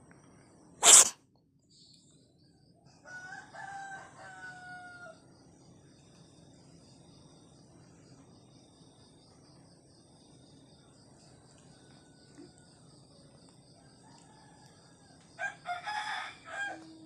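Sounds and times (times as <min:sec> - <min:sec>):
crickets chirping: 0:00.0 - 0:17.0
short loud cough: 0:00.8 - 0:01.1
rooster crowing: 0:03.0 - 0:05.2, 0:13.8 - 0:17.0.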